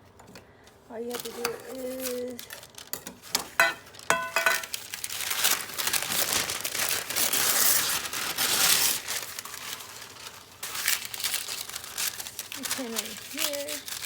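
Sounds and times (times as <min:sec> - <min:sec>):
baking paper crinkling: 0:00.8 - 0:14.0.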